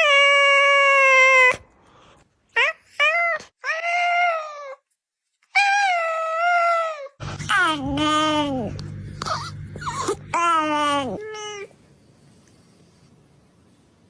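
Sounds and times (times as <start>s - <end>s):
low steady hum: 7.2s - 14.0s.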